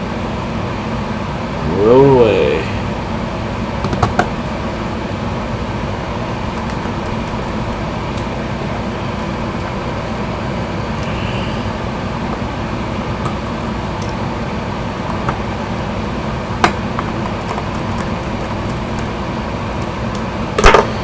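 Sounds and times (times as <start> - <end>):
low background hum: 0.0 - 21.0.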